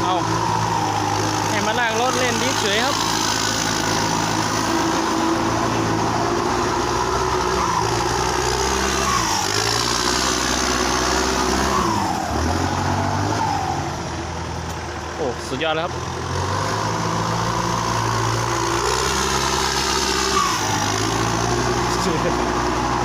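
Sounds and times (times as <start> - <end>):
tractor diesel engines under load: 0.0 - 23.0.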